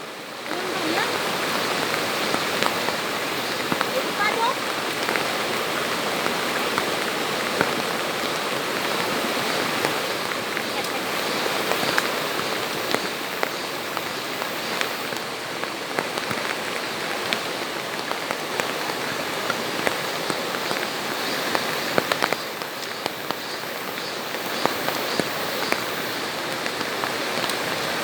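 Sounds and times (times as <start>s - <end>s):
rain hissing: 0.0s - 28.0s
raindrops tapping: 0.4s - 28.0s.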